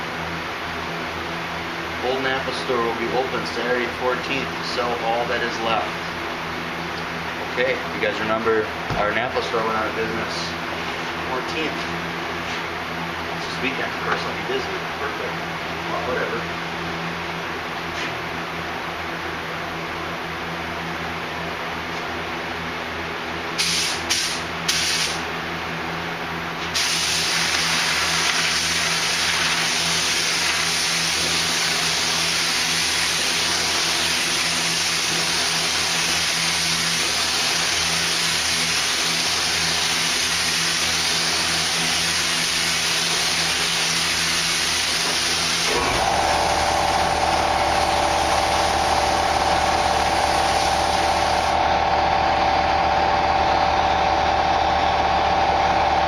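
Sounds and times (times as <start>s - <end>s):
spray gun hissing: 23.6s - 25.2s, 26.8s - 45.9s, 49.8s - 51.5s
motor whining: 44.8s - 51.7s.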